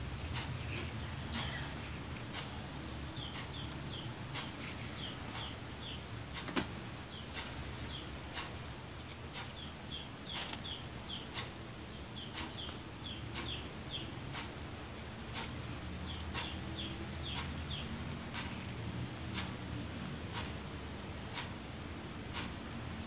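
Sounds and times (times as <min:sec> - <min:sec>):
low steady hum: 0:00.0 - 0:23.0
small bird chirping: 0:00.3 - 0:21.6.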